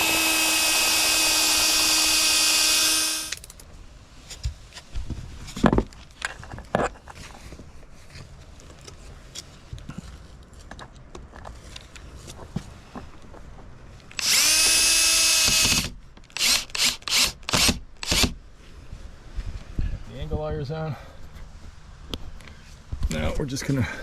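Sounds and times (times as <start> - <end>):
power drill driving a screw: 0.0 - 3.4, 14.2 - 18.4.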